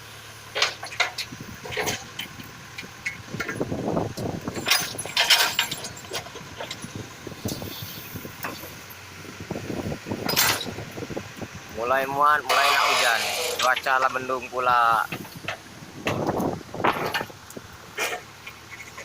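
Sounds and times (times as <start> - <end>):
excavator knocking and clattering: 0.5 - 7.6, 14.9 - 17.4
hissing bursts: 7.4 - 8.8.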